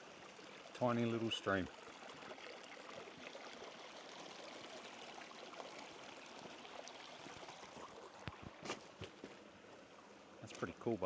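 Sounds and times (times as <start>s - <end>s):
creek trickling over rock: 0.0s - 11.0s.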